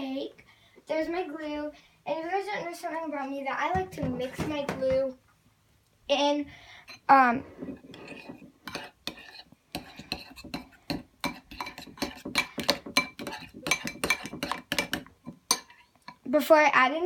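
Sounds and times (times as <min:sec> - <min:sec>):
utensil stirring glue in bowl: 0:06.9 - 0:16.3.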